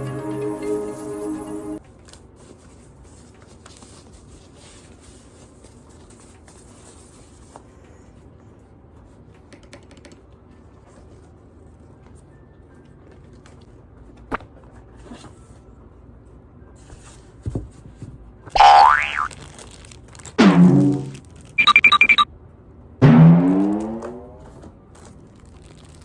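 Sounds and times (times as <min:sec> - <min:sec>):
background music: 0:00.0 - 0:01.8.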